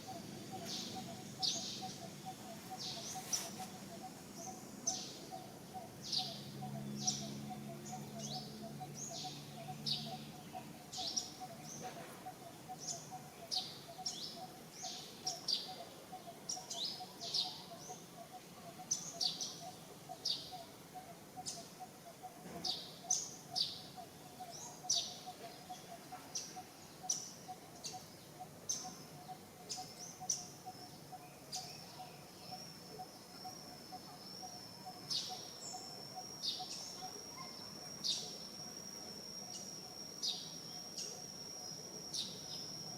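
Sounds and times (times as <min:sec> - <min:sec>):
steady pulsing drone: 0:00.0 - 0:18.8
high-pitched chirping calls: 0:00.0 - 0:42.9.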